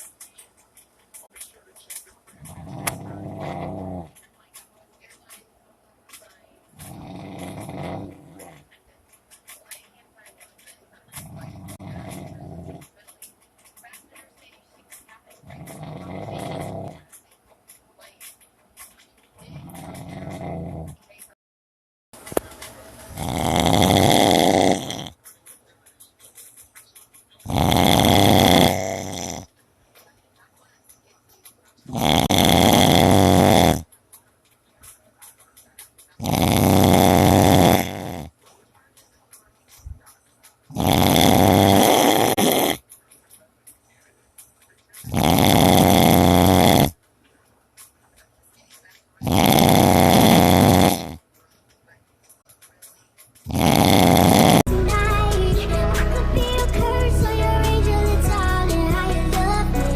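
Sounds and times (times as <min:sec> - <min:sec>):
loud rasping snoring: 0:02.4 - 0:04.2, 0:06.8 - 0:08.7, 0:11.1 - 0:13.0, 0:15.4 - 0:17.2, 0:19.4 - 0:21.0, 0:23.1 - 0:25.2, 0:27.4 - 0:29.5, 0:31.8 - 0:33.9, 0:36.2 - 0:38.3, 0:40.7 - 0:42.8, 0:45.0 - 0:47.0, 0:49.2 - 0:51.2, 0:53.5 - 0:59.9.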